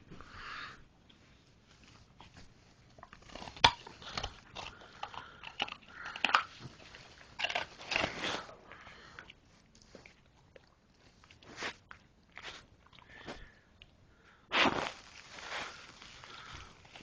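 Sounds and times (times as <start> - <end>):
dog chewing bone: 2.9 - 8.4.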